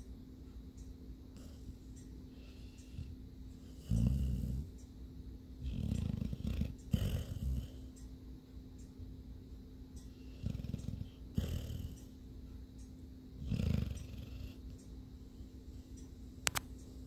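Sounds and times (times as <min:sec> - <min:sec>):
faint steady hum: 0:00.0 - 0:17.0
pet snoring: 0:02.4 - 0:04.8, 0:05.6 - 0:07.9, 0:10.1 - 0:12.2, 0:13.4 - 0:14.8.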